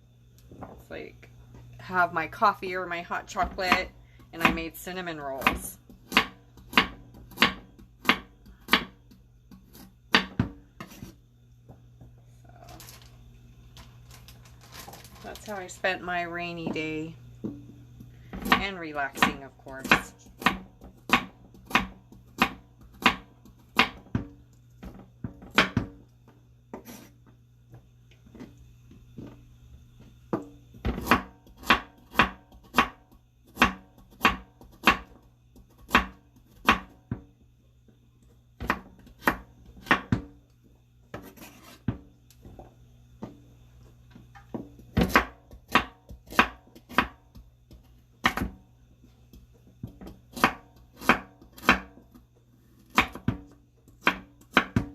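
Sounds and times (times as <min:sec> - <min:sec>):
knife chopping on cutting board: 0:05.4 - 0:11.2, 0:18.4 - 0:24.3, 0:25.3 - 0:25.9, 0:26.7 - 0:27.1, 0:30.3 - 0:37.2, 0:38.6 - 0:40.3, 0:41.1 - 0:42.1, 0:44.5 - 0:48.6, 0:49.3 - 0:52.0, 0:52.9 - 0:54.9.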